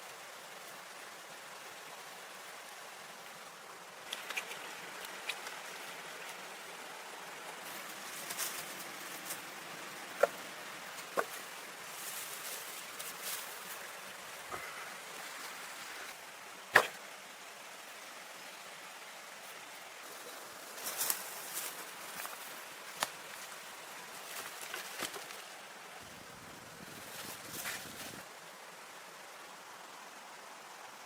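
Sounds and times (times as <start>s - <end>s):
running water hiss: 0.0s - 31.0s.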